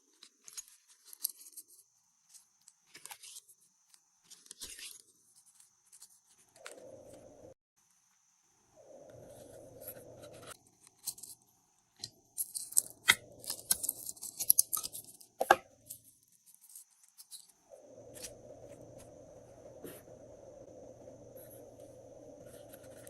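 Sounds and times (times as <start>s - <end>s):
low steady hum: 17.6s - 23.0s.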